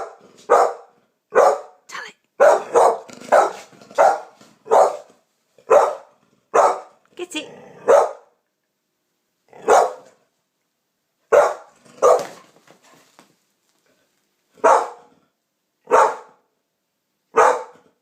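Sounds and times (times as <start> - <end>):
dog barking: 0.0 - 7.0, 7.8 - 8.4, 9.6 - 10.2, 11.3 - 12.5, 14.6 - 15.1, 15.8 - 16.5, 17.3 - 18.0.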